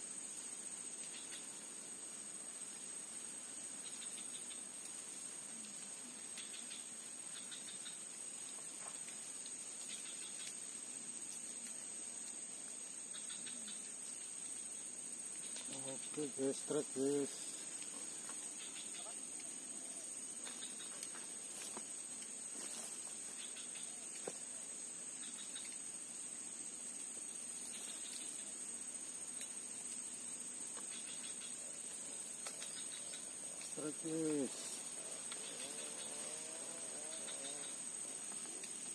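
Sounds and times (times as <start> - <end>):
insects chirping: 0.0 - 38.9
faint ticks: 0.9 - 1.5, 3.8 - 16.3, 17.1 - 24.5, 25.2 - 25.9, 26.9 - 28.6, 29.3 - 38.9
faint clicks: 5.6 - 10.6, 29.3 - 30.0, 32.4 - 36.1, 37.1 - 38.9.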